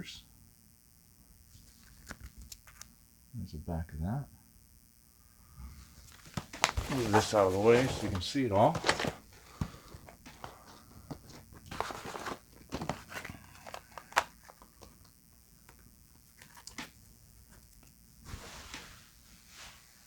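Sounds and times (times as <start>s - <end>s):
cardboard boxes knocking and rustling: 6.2s - 14.2s.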